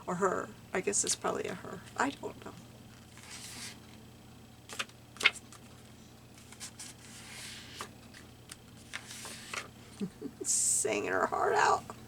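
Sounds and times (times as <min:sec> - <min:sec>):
page turning rustle: 0:03.0 - 0:04.0, 0:04.7 - 0:09.7.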